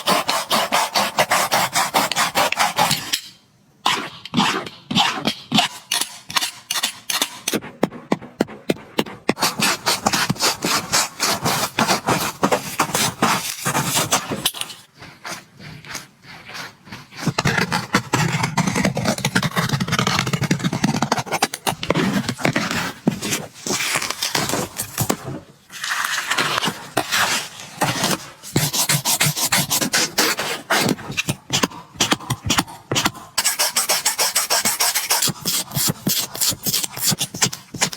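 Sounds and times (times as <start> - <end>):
rasping scraping on sneaker: 0.0 - 3.1, 3.9 - 31.3, 33.0 - 37.9
steady rubbing: 7.6 - 19.4.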